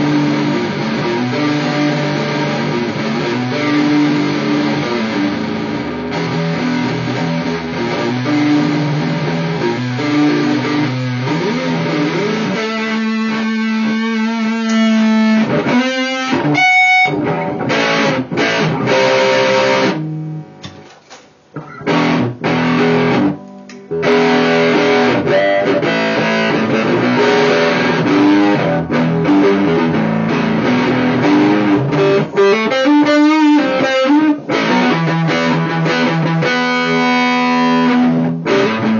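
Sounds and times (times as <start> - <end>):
distorted electric guitar: 0.0 - 38.9.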